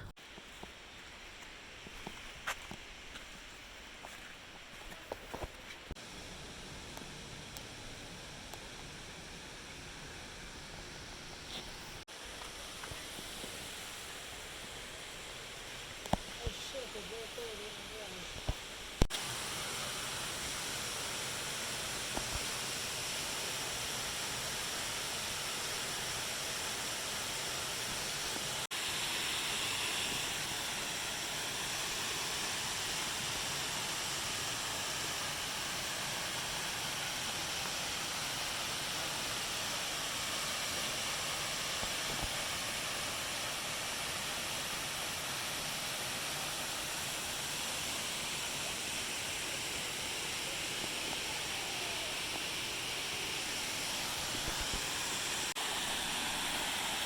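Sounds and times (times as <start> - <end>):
waterfall rushing: 16.3 - 18.4, 19.2 - 57.0.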